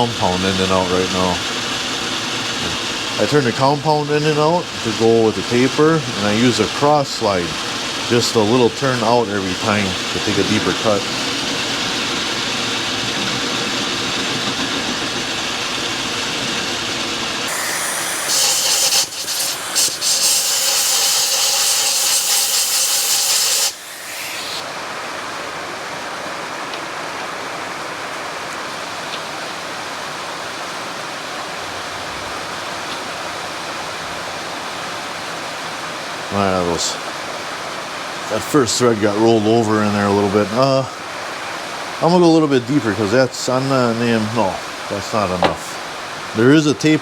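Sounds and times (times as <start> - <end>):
metal lathe running: 0.0 - 24.7
loud hiss: 17.4 - 24.9
rain on a metal roof: 25.0 - 38.3.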